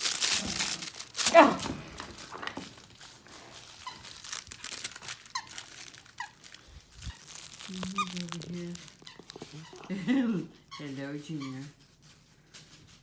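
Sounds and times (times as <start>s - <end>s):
faint rustling: 0.0s - 13.0s
dog toy squeaking: 3.8s - 9.9s.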